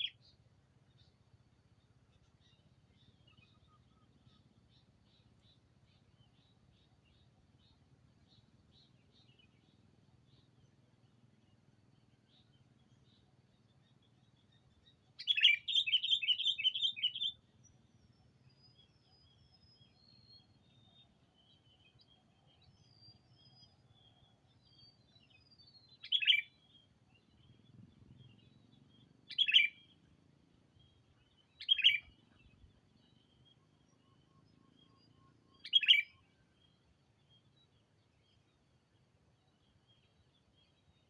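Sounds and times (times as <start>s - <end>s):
faint bird twittering: 0.0s - 41.0s
sharp bird calls: 14.0s - 17.5s, 25.4s - 26.8s, 27.4s - 30.0s, 30.8s - 36.8s.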